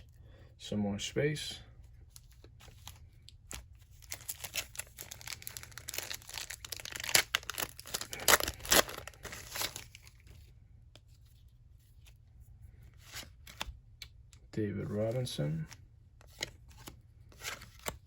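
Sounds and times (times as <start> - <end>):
paper wrapper tearing and crinkling: 3.5 - 10.2.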